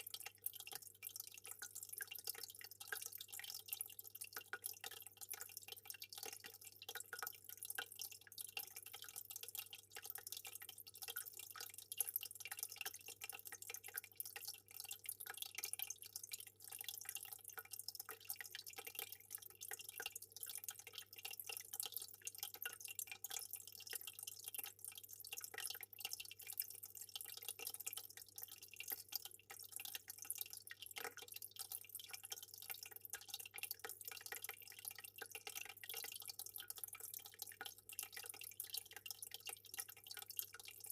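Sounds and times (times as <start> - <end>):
aquarium water trickling and dripping: 0.0 - 40.9.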